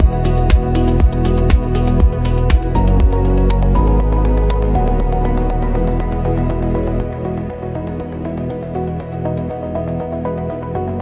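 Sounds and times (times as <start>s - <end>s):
held bass: 0.0s - 8.7s
synth chords: 0.0s - 11.0s.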